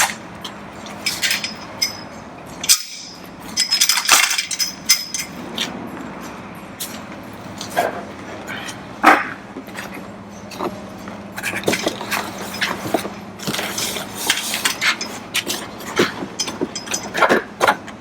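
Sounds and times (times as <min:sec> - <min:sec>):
steady low hum: 0:00.0 - 0:18.0
light metallic clinks and knocks: 0:00.8 - 0:05.4, 0:13.5 - 0:17.2.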